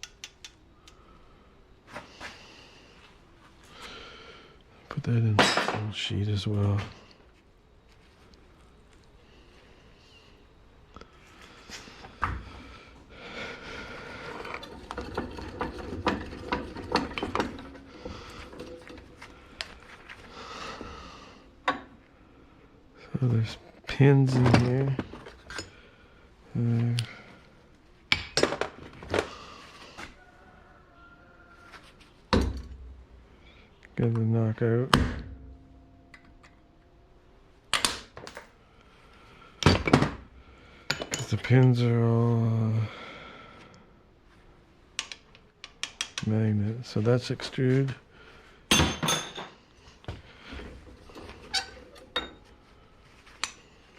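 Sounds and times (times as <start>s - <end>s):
small metal parts clicking: 0.0s - 1.0s.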